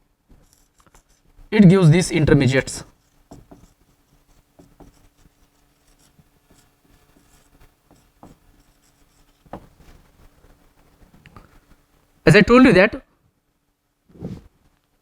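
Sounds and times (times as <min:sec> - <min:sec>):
pen scratching on paper: 0:02.0 - 0:11.8.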